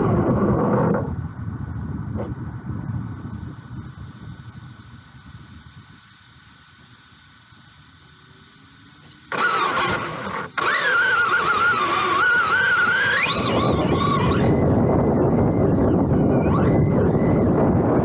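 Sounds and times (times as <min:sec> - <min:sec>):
electric motor whining: 0:03.2 - 0:18.0
tyres running over ground: 0:08.2 - 0:15.3.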